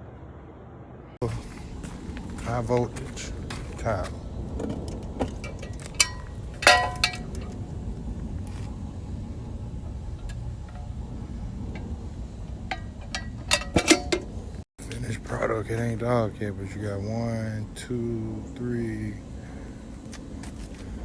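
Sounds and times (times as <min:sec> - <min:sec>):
low steady rumble: 0:00.0 - 0:21.0
light ringing clinks: 0:05.4 - 0:07.6.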